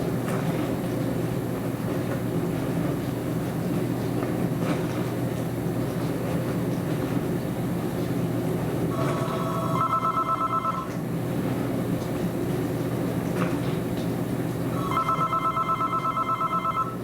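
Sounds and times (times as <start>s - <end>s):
dishwasher running: 0.0s - 17.0s
telephone ringing: 8.9s - 11.0s, 14.8s - 17.0s.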